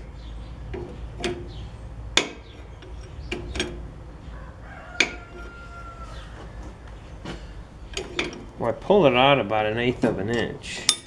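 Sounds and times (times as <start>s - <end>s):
metal tools clinking: 7.9s - 8.6s, 10.2s - 11.0s.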